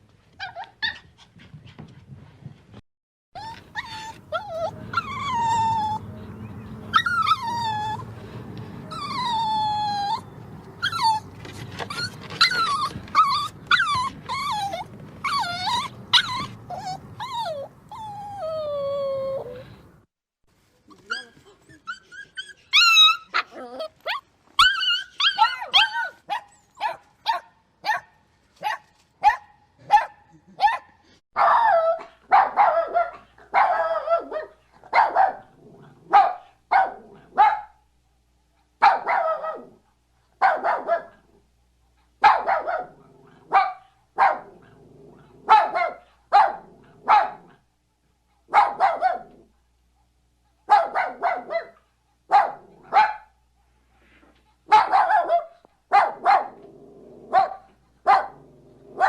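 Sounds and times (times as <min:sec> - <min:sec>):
puppy yipping and barking: 0:03.4 - 0:06.0, 0:06.9 - 0:08.1, 0:08.9 - 0:11.2, 0:11.9 - 0:19.5, 0:21.1 - 0:35.4, 0:54.7 - 0:56.5.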